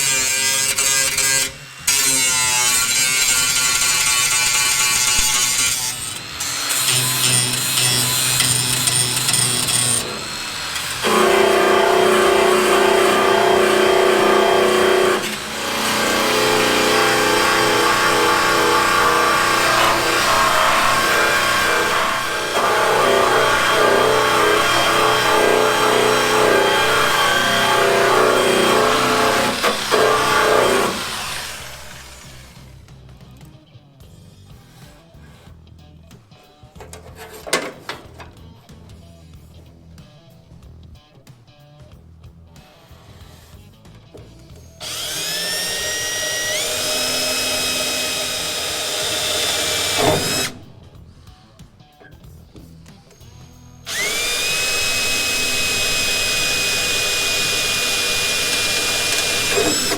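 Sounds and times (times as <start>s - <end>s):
power tool whining: 0.0s - 32.9s, 44.3s - 51.3s, 53.0s - 59.9s
background music: 0.1s - 59.9s.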